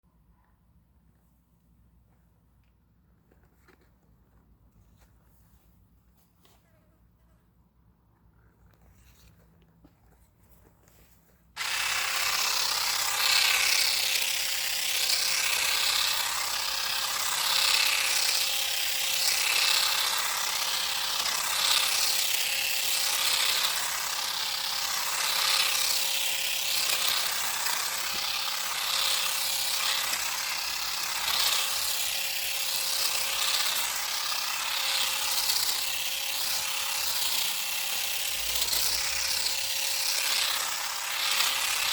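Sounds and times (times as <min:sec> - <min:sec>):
electric shears cutting ivy: 0:11.6 - 0:41.9.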